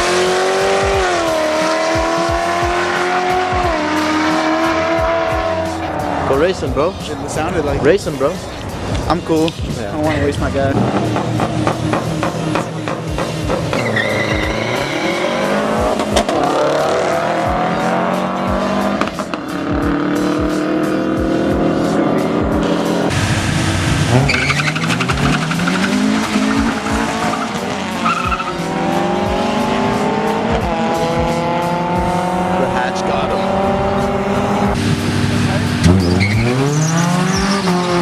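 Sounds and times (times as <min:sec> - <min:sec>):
music with steady beat: 0:00.0 - 0:14.6, 0:15.5 - 0:23.1, 0:24.9 - 0:35.0
car engines revving: 0:00.0 - 0:38.0
tire squeals: 0:13.5 - 0:16.0, 0:24.1 - 0:28.8, 0:35.8 - 0:38.0.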